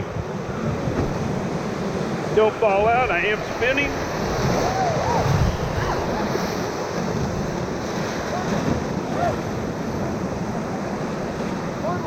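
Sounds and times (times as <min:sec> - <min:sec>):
whitewater rushing: 0:00.0 - 0:12.0
wind buffeting microphone: 0:00.0 - 0:12.0.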